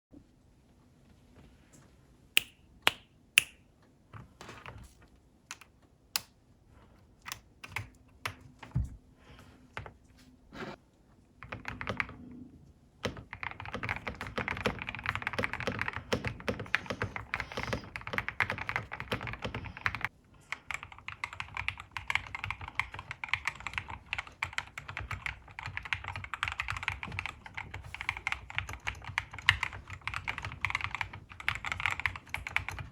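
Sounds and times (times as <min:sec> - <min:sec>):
mechanical keyboard typing: 0:07.2 - 0:08.5, 0:11.4 - 0:12.2, 0:13.0 - 0:32.9.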